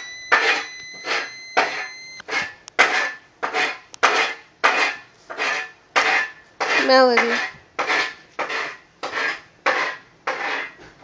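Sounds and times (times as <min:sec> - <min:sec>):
high ringing tone: 0:00.0 - 0:02.3.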